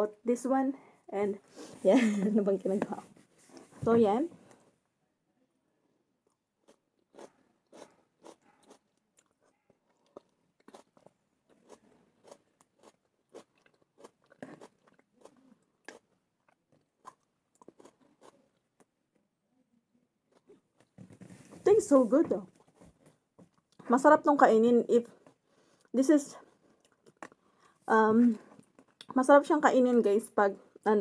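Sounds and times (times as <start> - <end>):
person chewing wet crunches: 6.2 - 18.9, 20.3 - 21.0, 22.5 - 23.8, 25.2 - 25.9, 26.5 - 27.9, 28.5 - 29.2.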